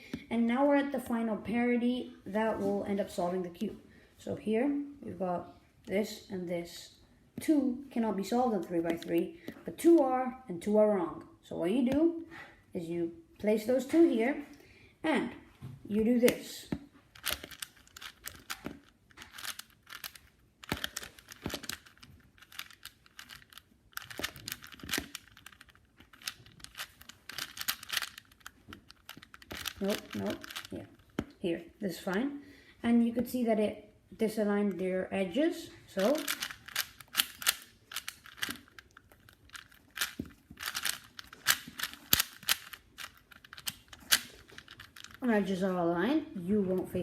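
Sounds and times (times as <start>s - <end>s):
puzzle cube layers clicking: 8.6s - 10.0s, 16.2s - 32.2s, 35.9s - 45.4s.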